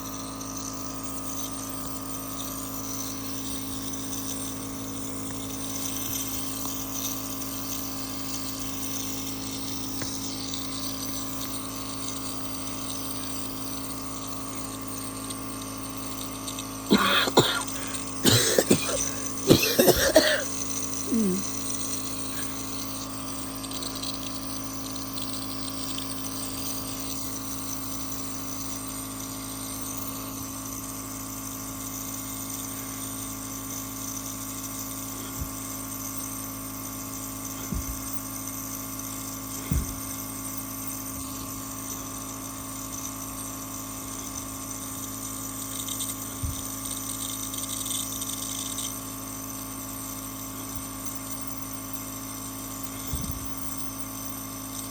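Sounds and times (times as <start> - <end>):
steady background hum: 16.0 - 29.0
person coughing: 16.9 - 21.5.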